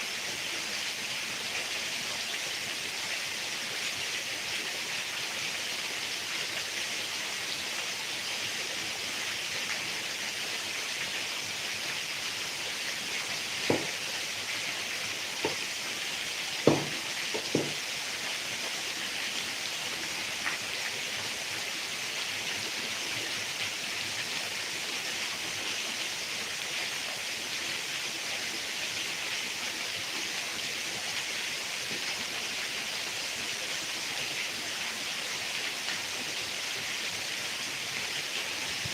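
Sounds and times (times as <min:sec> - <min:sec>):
heavy rain falling: 0:10.6 - 0:25.5.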